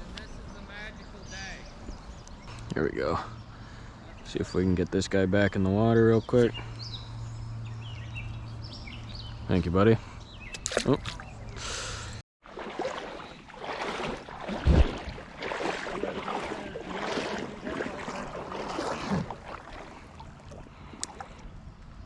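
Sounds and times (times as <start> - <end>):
river water rushing and splashing: 12.4 - 21.4.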